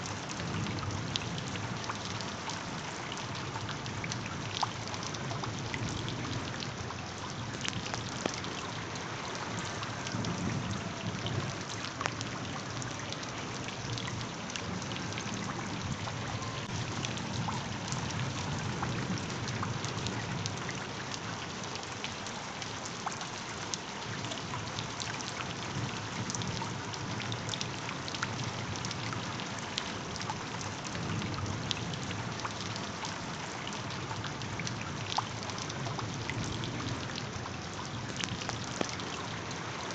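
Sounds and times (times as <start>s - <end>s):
steady rainfall: 0.0s - 39.9s
raindrop clicks: 7.4s - 8.7s, 11.2s - 12.3s, 38.0s - 39.2s.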